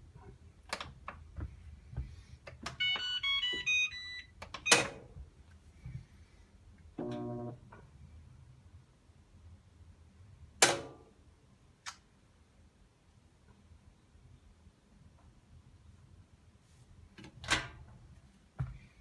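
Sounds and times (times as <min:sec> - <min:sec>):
short electronic beeps: 0:02.8 - 0:04.9.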